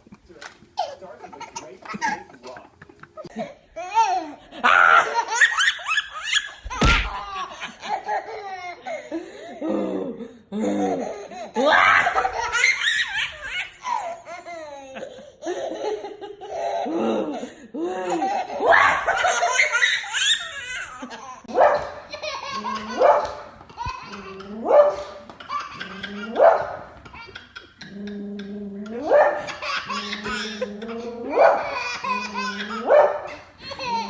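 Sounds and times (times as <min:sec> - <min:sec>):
baby laughing: 0:00.7 - 0:09.1, 0:10.6 - 0:17.4, 0:18.0 - 0:21.5, 0:22.1 - 0:34.0
sharp thump: 0:06.6 - 0:07.2.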